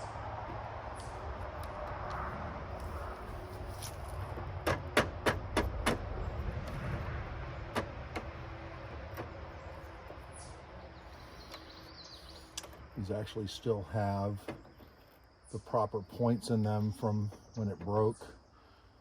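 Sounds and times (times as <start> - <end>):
steady low rumble: 0.0 - 13.4
sharp clicks and knocks: 3.8 - 6.9, 7.6 - 10.2, 12.5 - 12.9.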